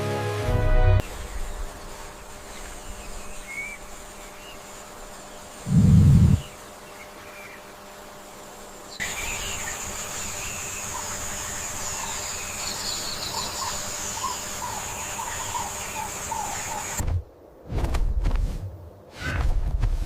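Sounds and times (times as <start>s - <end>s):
high insect drone: 1.0s - 17.0s.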